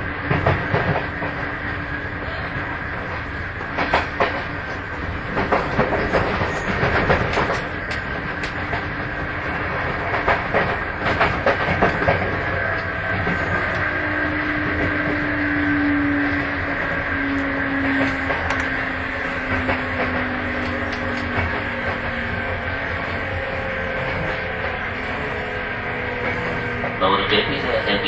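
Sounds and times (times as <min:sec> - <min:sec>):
train running rumble: 0:00.0 - 0:28.0
wheels clicking over rail joints: 0:05.3 - 0:09.1.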